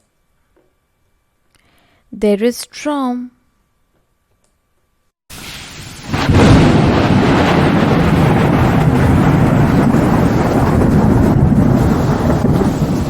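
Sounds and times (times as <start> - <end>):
deep rumble of thunder: 6.0 - 13.0.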